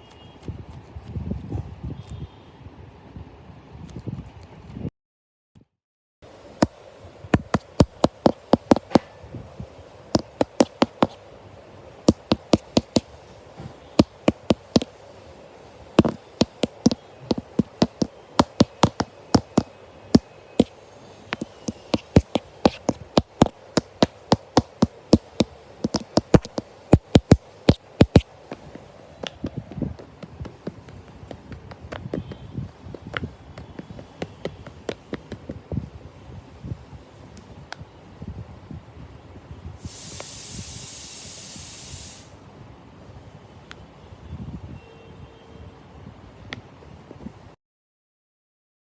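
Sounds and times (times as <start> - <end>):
sharp taps: 6.6 - 9.1, 10.1 - 11.2, 12.1 - 13.2, 14.0 - 15.0, 16.0 - 20.7, 21.3 - 29.4.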